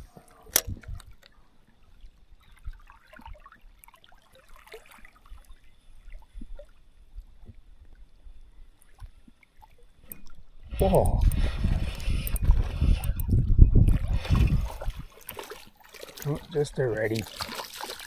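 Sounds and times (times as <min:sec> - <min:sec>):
fishing reel clicks: 0:00.5 - 0:01.3, 0:10.0 - 0:17.2
small clicks and rustles: 0:08.8 - 0:18.0
wind rumble on microphone: 0:10.4 - 0:15.2.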